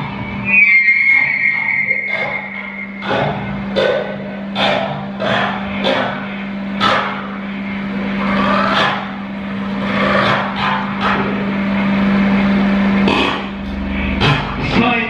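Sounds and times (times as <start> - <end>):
bursts of electronic noise: 0.0 - 8.3
low synthesizer drone: 0.0 - 15.0.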